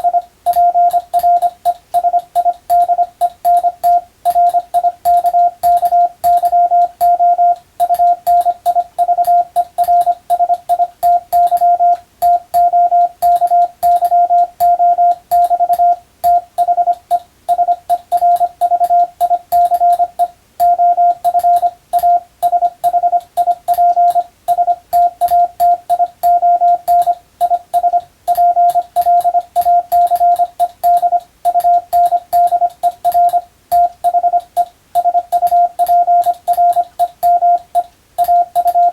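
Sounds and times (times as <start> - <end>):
morse code tone: 0.0 - 38.9.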